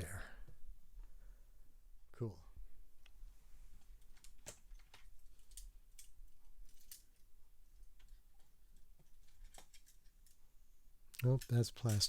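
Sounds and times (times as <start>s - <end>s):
toy cars clicking and tapping: 11.2s - 12.0s.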